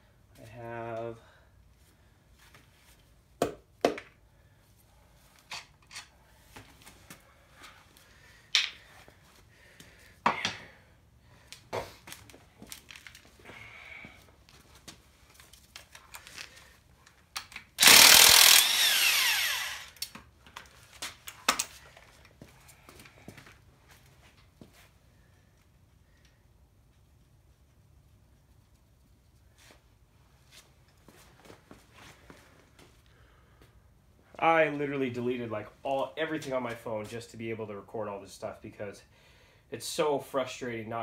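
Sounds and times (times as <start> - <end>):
handheld power tool running: 17.8 - 20.1.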